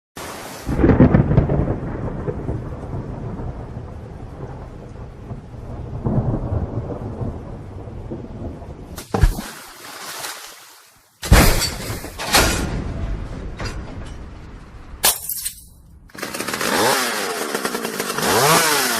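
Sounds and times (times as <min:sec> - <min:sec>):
thunder rumbling: 0:00.7 - 0:09.0, 0:11.3 - 0:15.0
sharp thunder crack: 0:00.7 - 0:09.5, 0:11.2 - 0:15.0.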